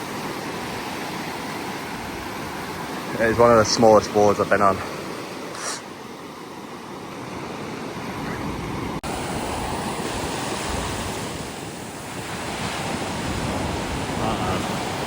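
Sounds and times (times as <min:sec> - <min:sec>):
waves breaking on beach: 0:00.0 - 0:15.0
wind on microphone: 0:07.7 - 0:15.0.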